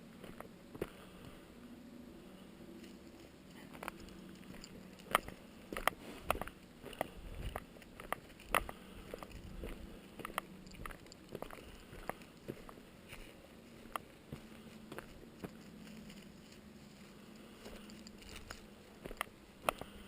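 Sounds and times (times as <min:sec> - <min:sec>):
faint low rumble: 0:00.0 - 0:20.0
short crunching clicks: 0:10.2 - 0:12.8, 0:17.7 - 0:20.0.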